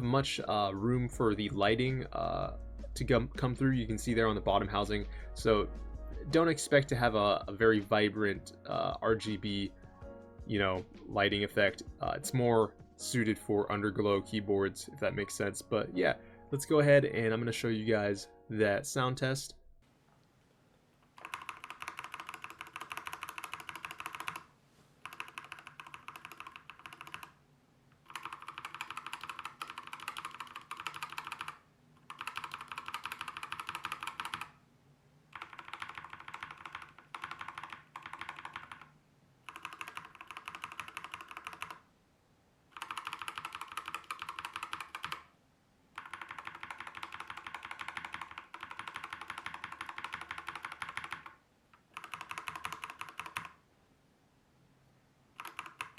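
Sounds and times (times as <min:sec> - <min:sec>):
fast mechanical keyboard typing: 0:21.1 - 0:27.4, 0:28.0 - 0:34.6, 0:35.3 - 0:41.8, 0:42.7 - 0:45.3, 0:46.0 - 0:53.6, 0:55.4 - 0:55.9.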